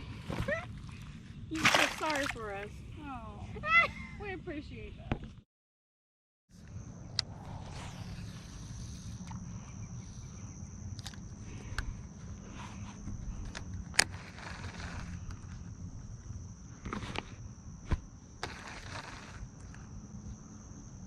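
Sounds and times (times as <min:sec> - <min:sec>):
insects trilling: 0:06.5 - 0:21.0
low outdoor rumble: 0:06.5 - 0:21.0.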